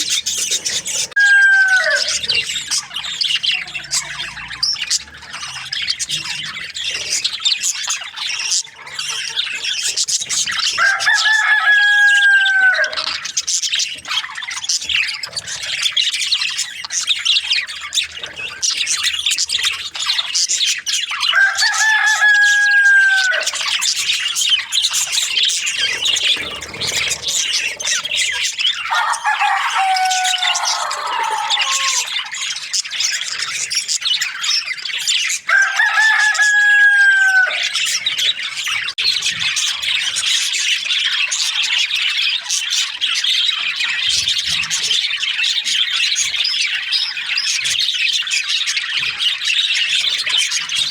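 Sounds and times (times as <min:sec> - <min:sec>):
budgerigars chirping and chattering: 0:00.0 - 0:50.9
rooster crowing: 0:00.9 - 0:02.5, 0:10.7 - 0:13.2, 0:21.3 - 0:23.7, 0:28.8 - 0:32.3, 0:35.5 - 0:38.0.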